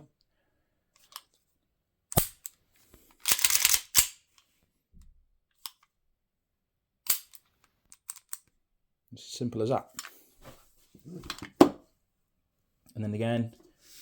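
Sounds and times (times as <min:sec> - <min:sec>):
pistol slide sliding scrape: 0:03.2 - 0:04.5.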